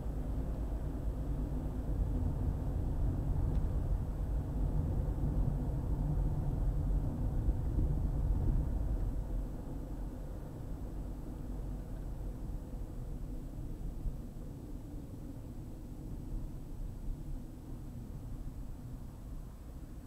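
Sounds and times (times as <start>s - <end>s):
car driving on highway: 0.0s - 20.0s.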